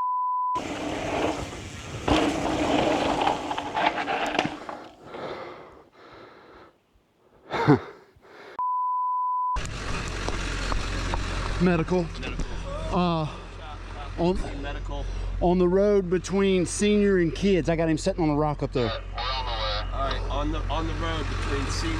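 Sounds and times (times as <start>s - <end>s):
censor bleep: 0.0s - 0.6s, 8.6s - 9.6s
rolling rattling noise: 0.6s - 5.8s.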